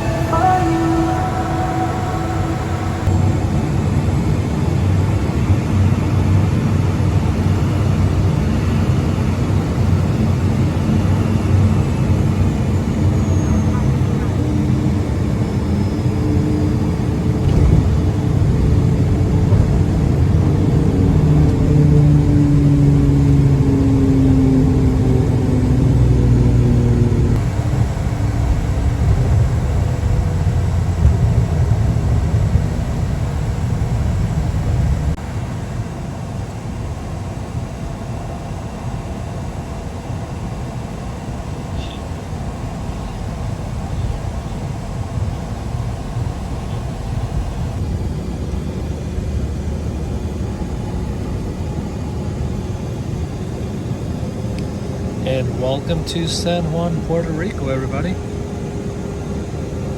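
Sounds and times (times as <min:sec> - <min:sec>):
tones falling in pitch: 0:00.0 - 0:03.7
jet cabin rumble: 0:00.0 - 0:07.6, 0:16.2 - 0:59.9.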